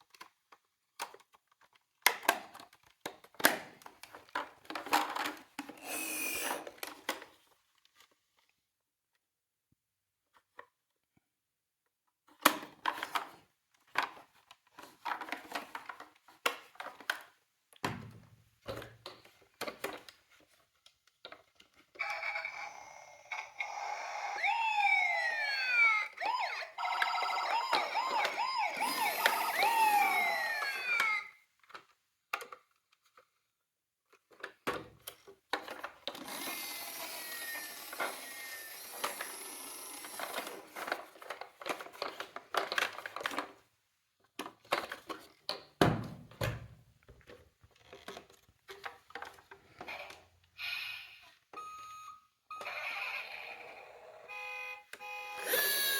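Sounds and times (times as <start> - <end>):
toy cars clicking and knocking: 0.0 - 7.4, 20.8 - 33.2, 34.1 - 45.7, 55.0 - 55.9
electronic toy sirens: 22.0 - 31.4, 36.3 - 40.7, 50.6 - 55.9.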